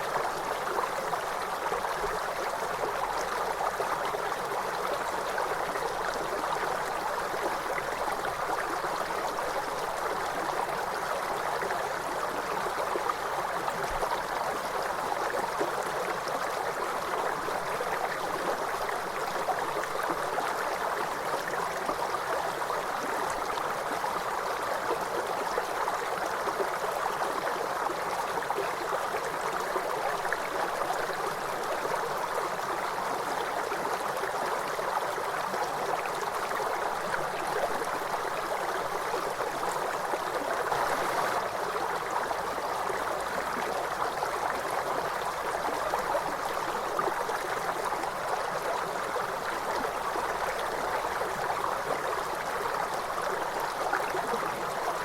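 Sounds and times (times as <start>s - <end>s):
river flowing: 22.6s - 55.0s.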